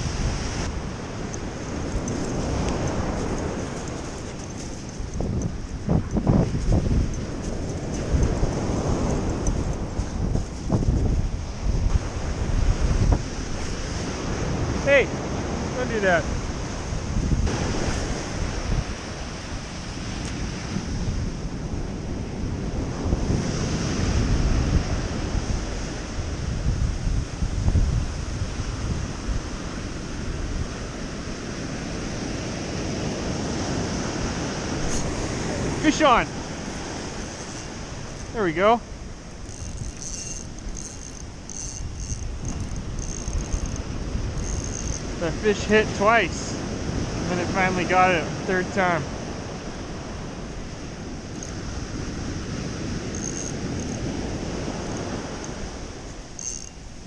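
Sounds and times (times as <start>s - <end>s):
ocean surf washing on beach: 0.0s - 57.0s
wind buffeting microphone: 0.0s - 57.0s.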